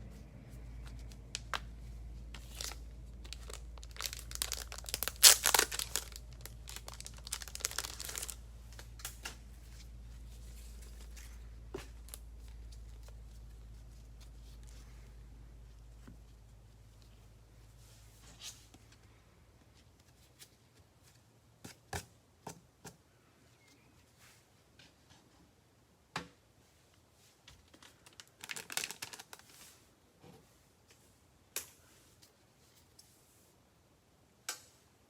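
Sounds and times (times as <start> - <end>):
steady low hum: 0.0 - 20.0
plastic wrapping tearing and crinkling: 2.4 - 9.3, 27.8 - 29.6.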